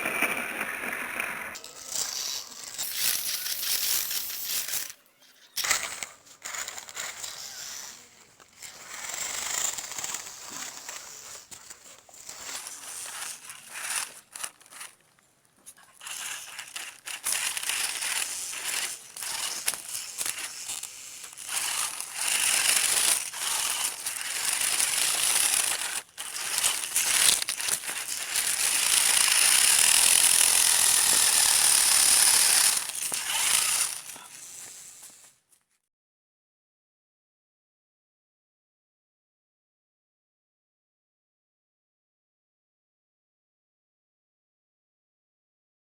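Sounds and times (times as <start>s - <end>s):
toy car motor whirring: 0.0s - 35.4s.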